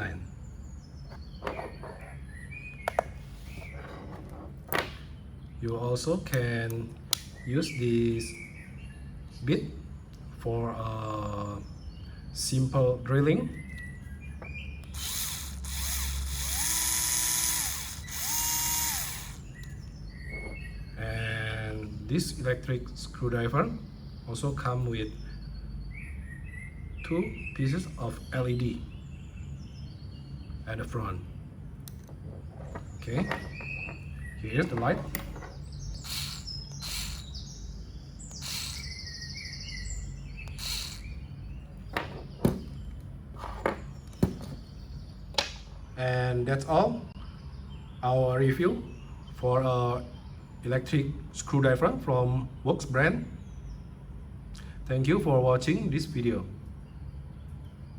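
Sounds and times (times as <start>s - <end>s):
birds chirping: 0.0s - 57.9s
low steady hum: 0.0s - 57.9s
electric screwdriver motor whine: 14.9s - 19.5s, 36.0s - 37.4s, 38.3s - 38.9s, 40.5s - 41.1s
hissing bursts: 36.0s - 37.4s, 38.3s - 38.9s, 40.5s - 41.1s.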